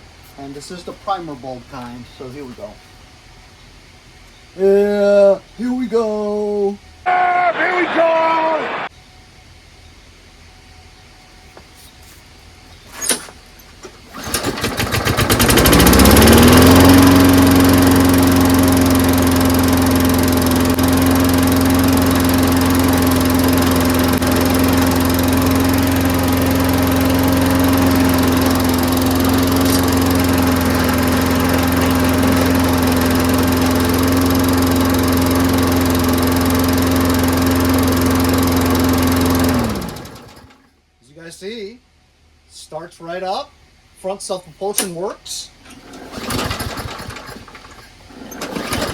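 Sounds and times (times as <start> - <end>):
starter rope pull: 12.9 - 40.6, 45.6 - 48.9
lawn mower engine running: 12.9 - 40.7, 45.5 - 48.9.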